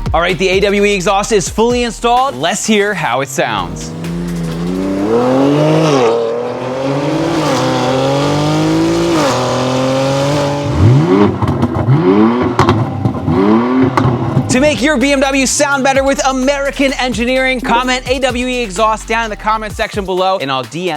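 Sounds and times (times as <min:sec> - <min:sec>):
car engine revving: 0:00.8 - 0:19.4
loud engine rev blips: 0:03.1 - 0:15.5.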